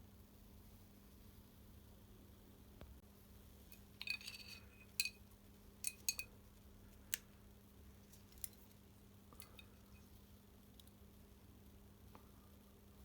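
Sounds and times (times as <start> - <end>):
clicks and clinks of small parts: 3.7 - 5.2, 5.8 - 6.3, 8.0 - 8.8, 9.4 - 10.1.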